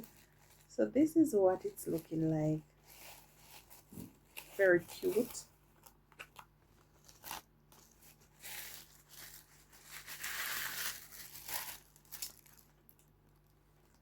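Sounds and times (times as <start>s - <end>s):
plastic packaging crinkling: 0.0s - 14.0s.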